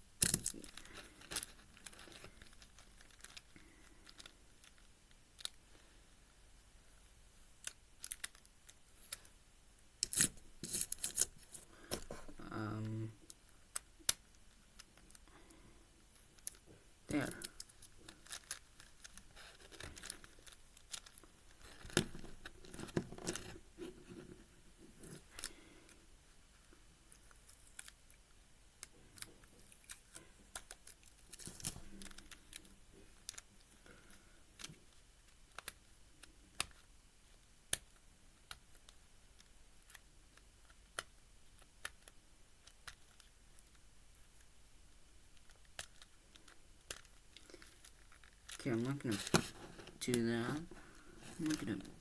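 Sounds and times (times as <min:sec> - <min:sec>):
plastic puzzle pieces clicking: 0:00.2 - 0:05.6, 0:07.6 - 0:09.3, 0:16.4 - 0:23.5, 0:27.1 - 0:33.5, 0:34.6 - 0:44.5, 0:45.4 - 0:49.5
tape rustling: 0:00.2 - 0:05.6, 0:10.0 - 0:15.5, 0:16.2 - 0:37.5, 0:45.3 - 0:52.0.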